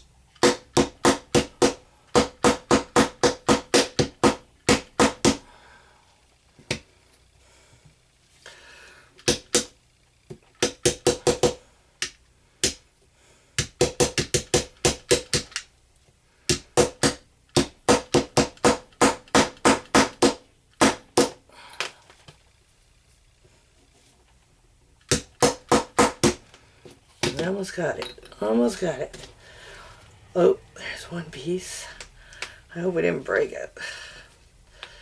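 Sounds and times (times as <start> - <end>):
hammer chipping at plaster: 0.4 - 5.4, 9.2 - 9.7, 13.6 - 15.6, 16.5 - 21.4, 25.1 - 26.4.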